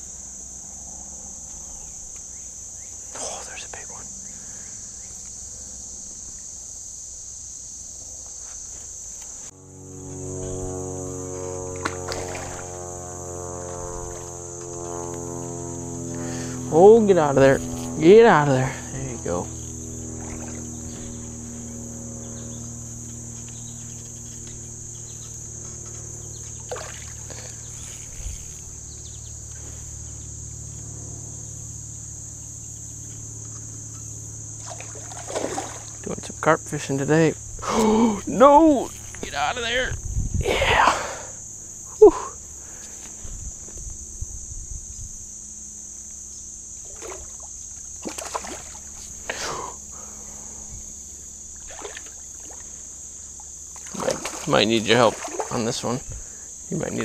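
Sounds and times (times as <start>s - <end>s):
insects droning: 0.0s - 57.0s
low background rumble: 9.3s - 54.5s.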